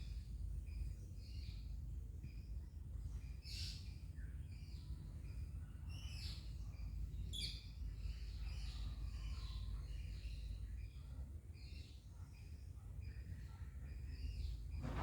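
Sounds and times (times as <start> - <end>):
steady low rumble: 14.8 - 15.0.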